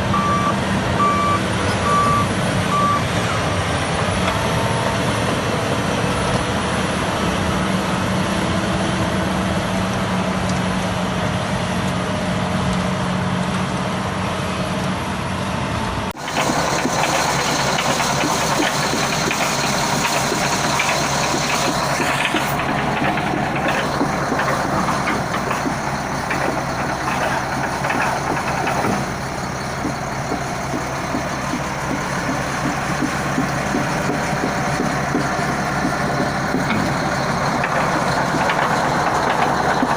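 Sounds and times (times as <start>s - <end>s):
bulldozer diesel engine running: 0.0s - 39.9s
mechanical clatter with knocking: 16.2s - 39.9s.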